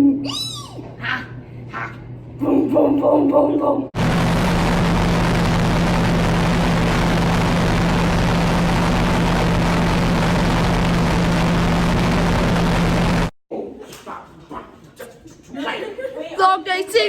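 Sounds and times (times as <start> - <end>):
loud steady rushing noise: 4.0 - 13.3.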